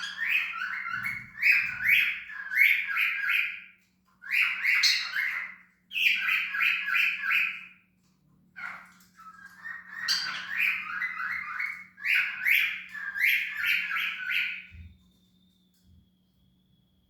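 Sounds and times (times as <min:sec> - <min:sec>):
cockatiel squawking: 0:08.6 - 0:14.7.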